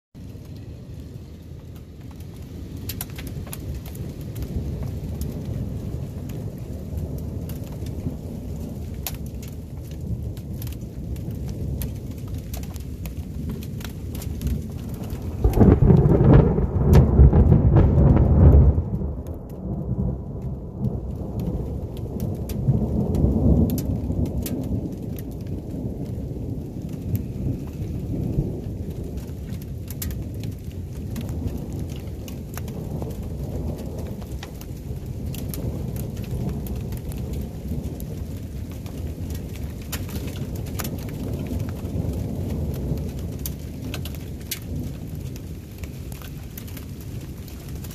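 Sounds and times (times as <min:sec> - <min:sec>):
raindrops ticking: 0:00.2 - 0:47.9
steady rain: 0:00.2 - 0:47.9
thunder rumbling: 0:00.2 - 0:47.9.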